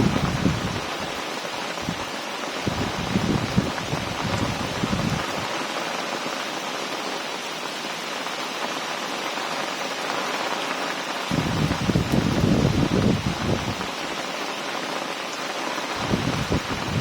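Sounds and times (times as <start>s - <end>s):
heavy rain pouring: 0.0s - 17.0s.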